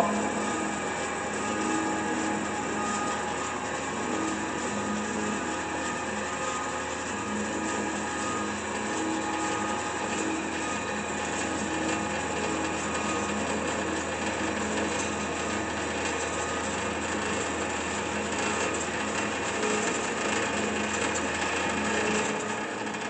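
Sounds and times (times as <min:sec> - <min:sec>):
saw blade whirring: 0:00.0 - 0:14.0
band saw motor humming: 0:00.0 - 0:23.0.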